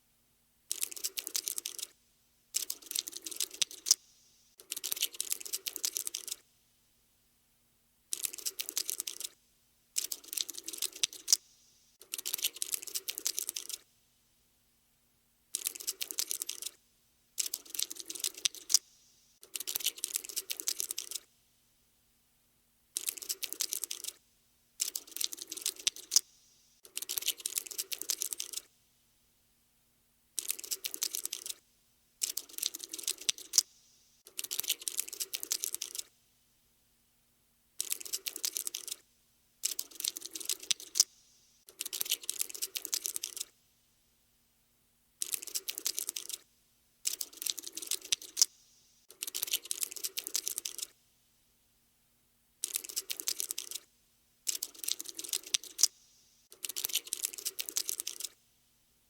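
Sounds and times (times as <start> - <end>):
cockroach scuttling: 0.7 - 1.9, 2.5 - 6.4, 8.1 - 9.4, 10.0 - 11.4, 12.0 - 13.8, 15.5 - 16.8, 17.4 - 21.2, 23.0 - 24.2, 24.8 - 28.7, 30.4 - 31.6, 32.2 - 36.1, 37.8 - 39.0, 39.6 - 41.1, 41.7 - 43.5, 45.2 - 46.4, 47.0 - 50.9, 52.6 - 53.9, 54.5 - 58.4.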